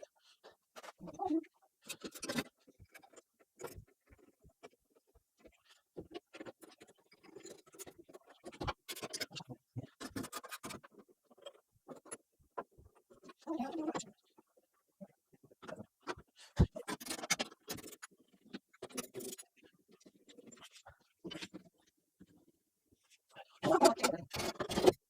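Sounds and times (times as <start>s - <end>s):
tools scraping clicking and knocking: 1.8s - 4.3s, 6.0s - 12.2s, 16.1s - 19.4s, 24.0s - 25.0s.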